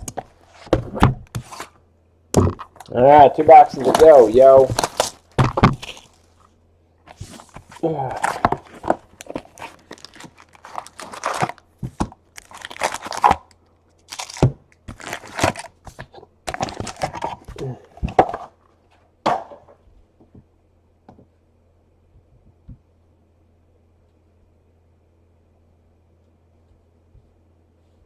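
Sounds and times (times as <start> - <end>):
plastic wrapping tearing and crinkling: 3.5 - 6.3, 8.2 - 11.7, 12.3 - 15.9, 16.5 - 17.5.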